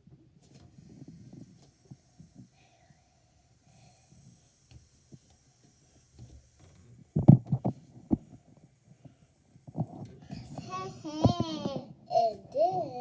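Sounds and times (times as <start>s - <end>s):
thumps of objects being handled: 6.2s - 8.6s.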